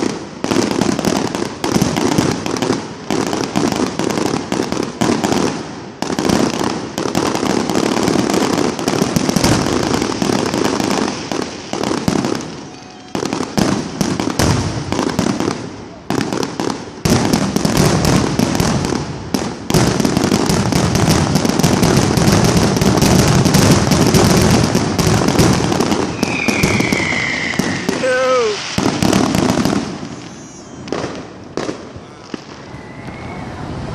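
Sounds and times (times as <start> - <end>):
fireworks crackling bangs: 0.0 - 33.9
high falling whistle: 12.6 - 13.3, 26.2 - 28.6, 30.2 - 30.9, 32.0 - 33.8.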